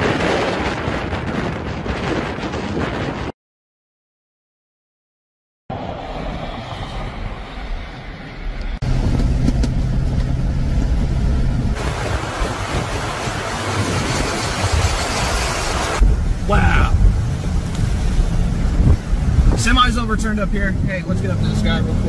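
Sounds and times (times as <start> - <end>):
wind buffeting microphone: 0.0 - 3.3, 5.7 - 22.0
vehicle engine humming: 5.7 - 22.0.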